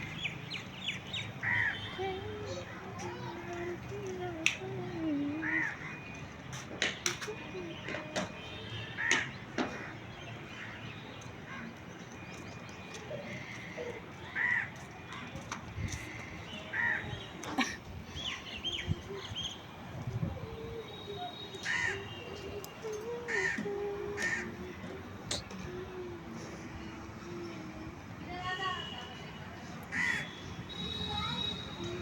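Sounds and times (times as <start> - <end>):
crows cawing: 14.4 - 14.7, 29.9 - 30.3.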